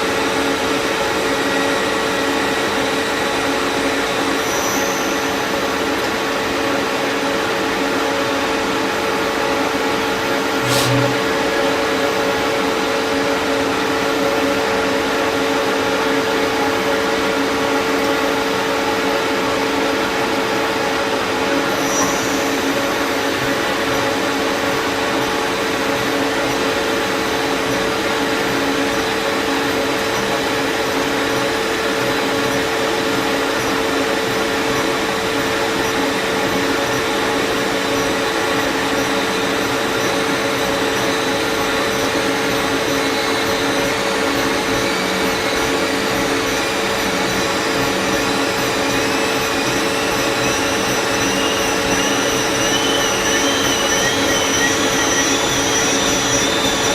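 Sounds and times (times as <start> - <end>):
faint wavering high whine: 0.0 - 6.9, 9.7 - 12.2, 21.6 - 24.6, 37.0 - 56.9
lathe machine hum: 0.0 - 56.9.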